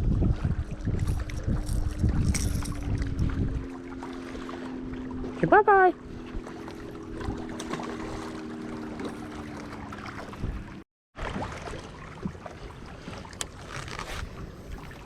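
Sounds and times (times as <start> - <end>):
low hum: 0.0 - 10.8
wind on microphone: 0.0 - 10.8.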